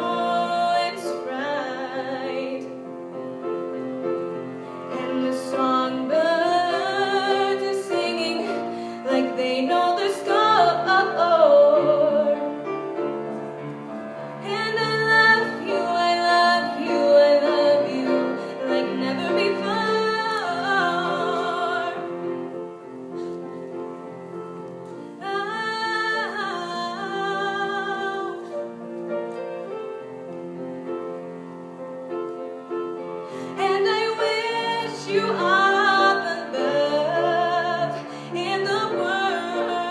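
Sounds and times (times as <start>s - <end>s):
piano accompaniment: 0.0s - 39.9s
woman singing a slow ballad: 25.2s - 28.5s.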